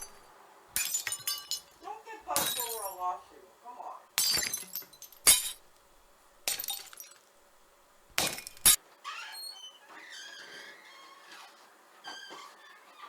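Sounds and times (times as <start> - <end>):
glass shattering: 0.8 - 1.8, 2.4 - 3.0, 4.2 - 5.7, 6.4 - 7.3, 8.2 - 8.8.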